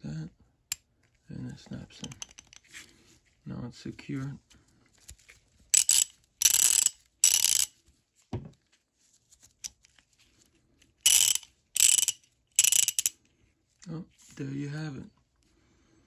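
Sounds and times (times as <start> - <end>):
ratchet clicking: 5.8 - 7.7, 11.0 - 13.1.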